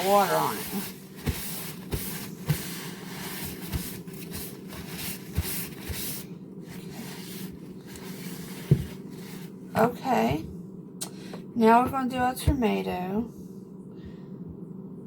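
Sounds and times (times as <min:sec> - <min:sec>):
cutting board being wiped: 0:00.0 - 0:09.5
faint steady hum: 0:00.0 - 0:15.0.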